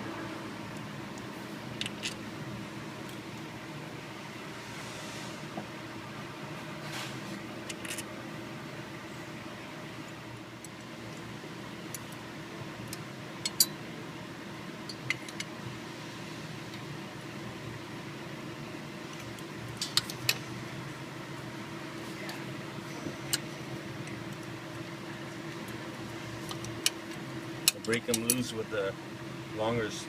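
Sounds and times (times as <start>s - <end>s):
steady background hum: 0.0s - 30.0s
hand tools clicking and tapping: 13.4s - 13.7s, 26.5s - 28.5s.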